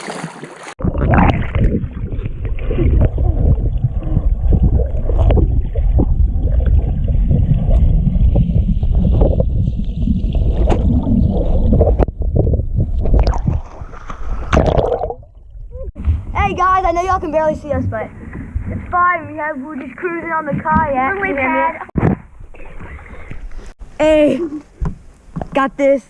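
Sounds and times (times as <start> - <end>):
water sloshing: 0.0 - 21.9
wind rumble on microphone: 0.9 - 14.5.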